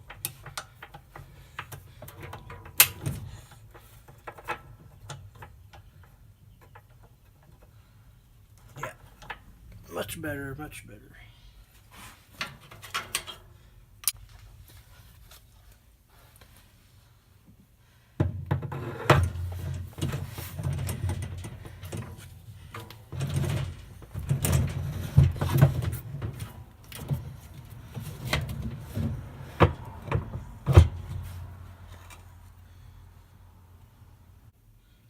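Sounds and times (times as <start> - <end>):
tools and metal parts clattering: 0.0 - 7.7, 12.4 - 14.2, 19.0 - 31.3.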